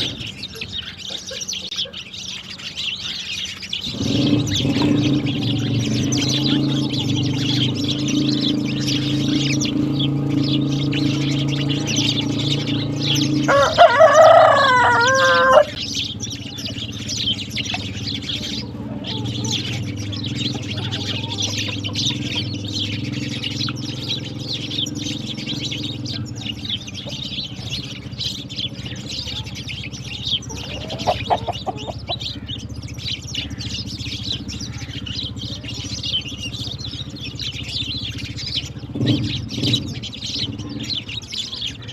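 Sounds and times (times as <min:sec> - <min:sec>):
sparrows chirping: 0:00.0 - 0:41.9
rooster crowing: 0:13.1 - 0:15.8.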